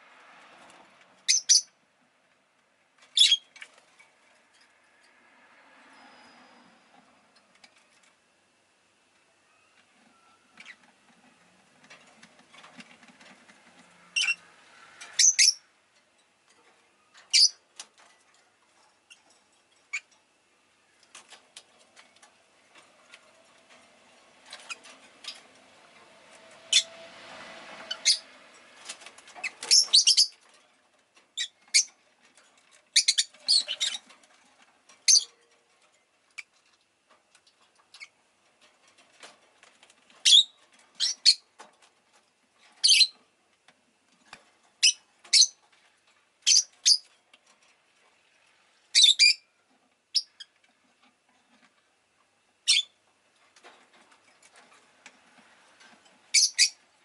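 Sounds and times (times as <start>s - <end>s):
bird chirping high-pitched: 1.3s - 1.7s, 3.2s - 3.4s, 15.2s - 15.6s, 17.3s - 17.6s, 29.5s - 30.4s, 35.1s - 35.3s, 42.8s - 43.1s, 46.5s - 47.0s, 48.9s - 49.4s, 52.6s - 53.0s, 56.3s - 56.8s.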